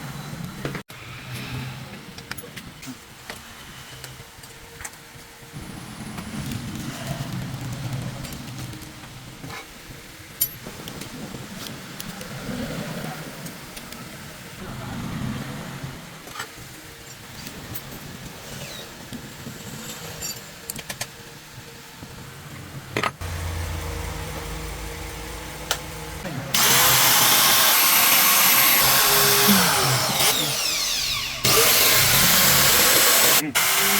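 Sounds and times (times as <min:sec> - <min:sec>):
low hum: 0:23.2 - 0:32.9
angle grinder motor running: 0:23.2 - 0:33.9.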